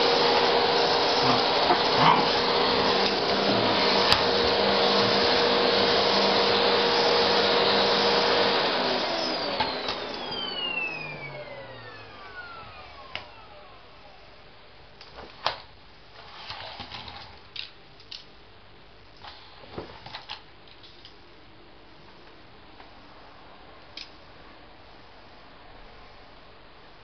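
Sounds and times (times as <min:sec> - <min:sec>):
vacuum cleaner running: 0:00.0 - 0:14.4
motor winding down whine: 0:08.8 - 0:13.8.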